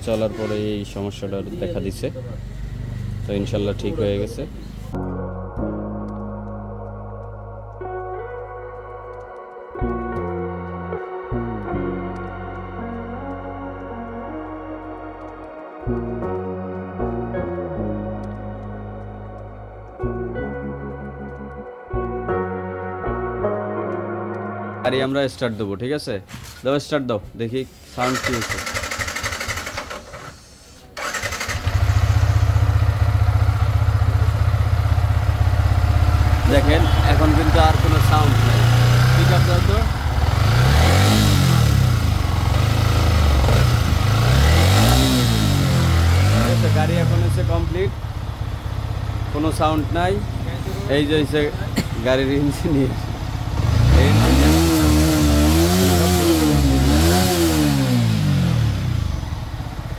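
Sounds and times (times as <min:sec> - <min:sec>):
motorcycle starter cranking: 0:28.0 - 0:33.8
motorcycle engine idling: 0:31.0 - 0:53.8, 0:58.7 - 0:59.9.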